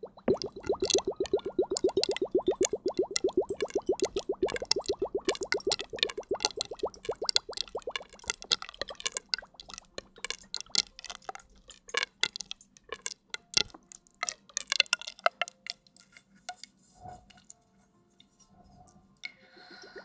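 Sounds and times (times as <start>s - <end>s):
rapid tapping and clicking: 0.0s - 11.6s.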